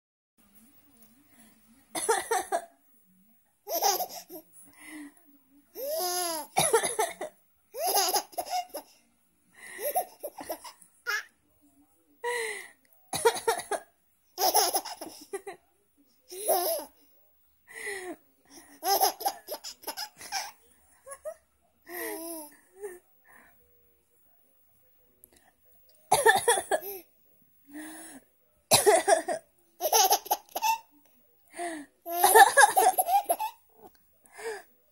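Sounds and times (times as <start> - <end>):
baby laughing: 3.7 - 4.4, 7.8 - 8.9, 14.4 - 15.3, 16.3 - 16.9, 18.8 - 20.6, 29.8 - 30.9, 32.1 - 33.6
adult coughing: 6.6 - 7.3, 13.1 - 13.9, 26.1 - 27.0, 28.7 - 29.4.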